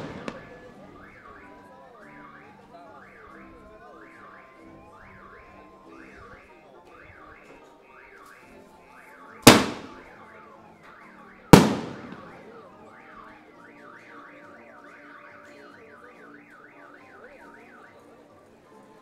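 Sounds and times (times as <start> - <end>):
firecracker blast echoing: 0.0 - 0.8, 9.4 - 10.1, 11.5 - 12.6
car alarm wailing: 0.0 - 1.6.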